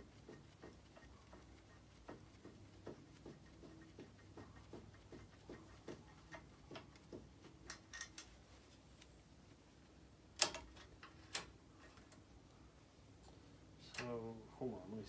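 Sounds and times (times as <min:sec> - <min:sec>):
sharp clicks: 0:10.4 - 0:11.5.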